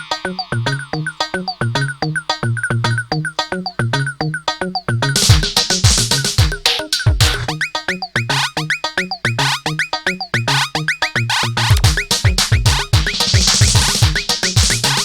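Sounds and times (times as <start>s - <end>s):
dance music with drum-machine beat: 5.2s - 7.6s, 8.2s - 8.7s, 9.4s - 15.0s.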